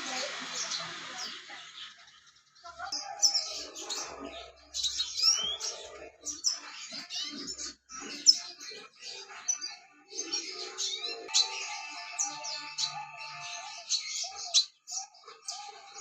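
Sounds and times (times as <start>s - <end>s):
bird chirping and trilling: 0.0s - 16.0s.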